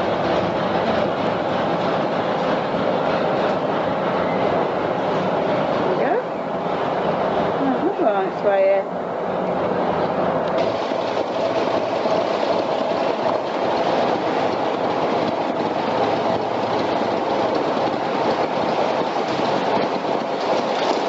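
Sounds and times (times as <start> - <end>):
boat engine rumbling in tunnel: 0.0 - 21.0.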